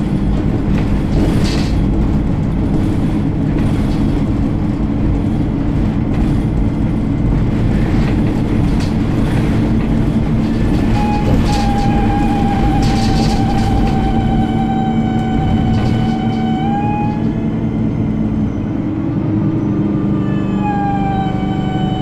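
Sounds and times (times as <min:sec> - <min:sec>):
light rattles: 0:00.0 - 0:17.4
bus engine drone: 0:00.0 - 0:22.0
high-pitched squeal: 0:10.3 - 0:22.0.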